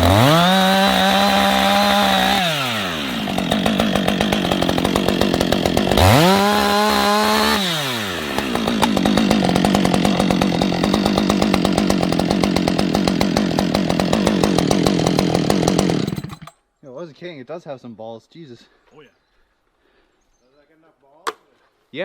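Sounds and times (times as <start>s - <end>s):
chainsaw idling and revving: 0.0s - 16.6s.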